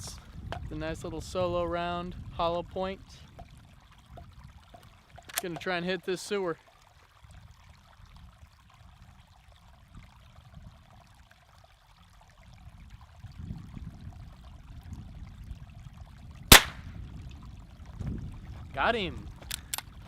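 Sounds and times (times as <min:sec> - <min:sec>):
rifle shot: 0:16.5 - 0:16.9.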